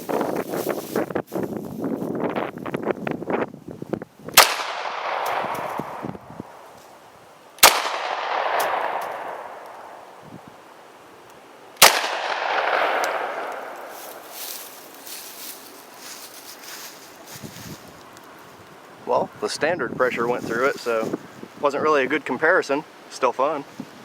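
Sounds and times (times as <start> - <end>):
pistol shots: 4.4 - 6.0, 7.6 - 10.0, 11.8 - 13.9
long echo: 7.6 - 10.2, 11.8 - 14.3.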